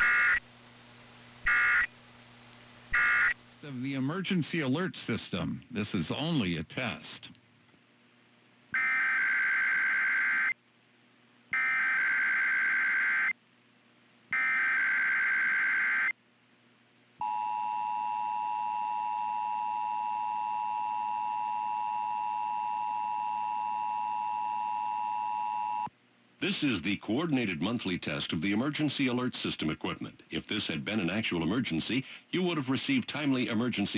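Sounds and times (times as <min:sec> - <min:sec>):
buzzy digital data tones: 0:00.0 - 0:00.4, 0:01.4 - 0:01.9, 0:02.9 - 0:03.4, 0:11.6 - 0:13.3, 0:14.4 - 0:16.1.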